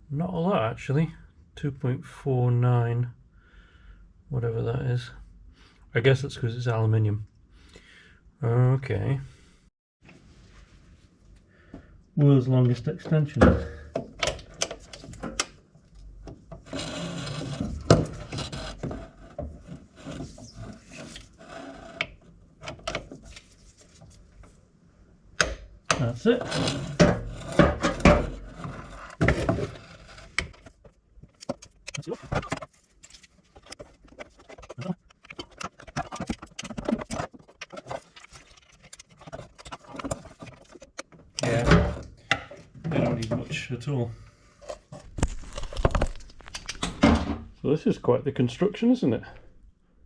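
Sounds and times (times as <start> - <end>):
metal scraping and rasping: 16.6 - 22.2, 26.2 - 41.6.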